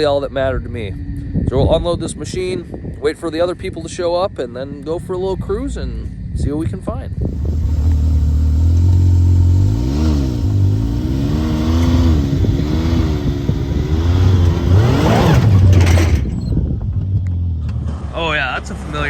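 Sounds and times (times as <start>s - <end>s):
vehicle engine revving: 7.1s - 19.0s.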